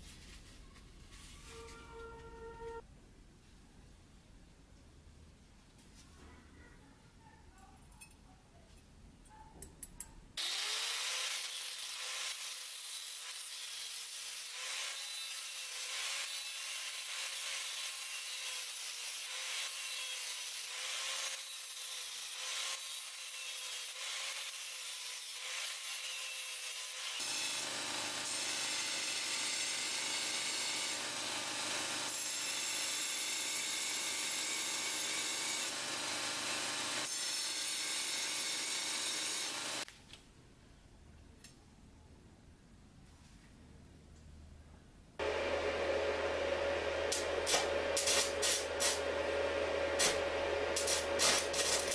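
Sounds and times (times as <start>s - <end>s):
power tool abrading: 10.4s - 16.3s, 27.2s - 39.9s, 45.2s - 51.9s.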